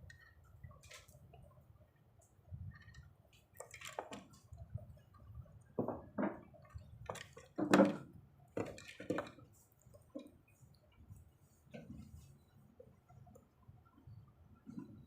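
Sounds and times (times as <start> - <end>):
objects knocking and clicking: 2.7 - 4.4, 5.8 - 10.3.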